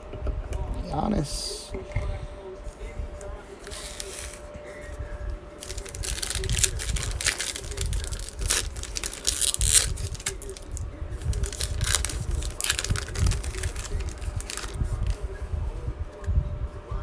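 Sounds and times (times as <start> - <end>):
trading cards rustling and crinkling: 3.5 - 4.4, 5.6 - 15.3.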